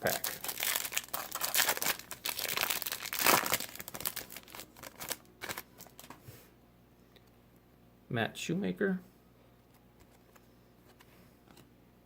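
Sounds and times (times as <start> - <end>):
wrapper tearing and crinkling: 0.0 - 6.1.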